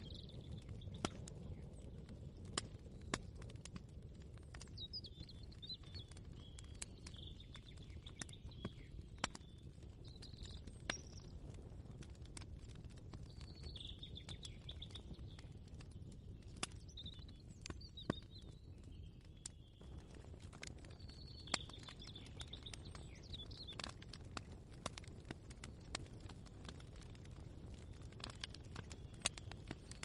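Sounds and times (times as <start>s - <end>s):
small bird chirping: 0.0s - 3.3s, 13.2s - 19.9s, 20.8s - 24.0s
sharp clicks and ticks: 19.4s - 30.0s.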